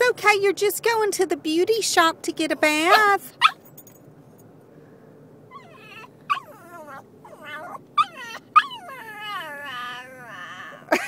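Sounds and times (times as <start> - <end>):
dog yelping: 2.9 - 3.6, 5.5 - 11.0
dog whining: 5.5 - 11.0.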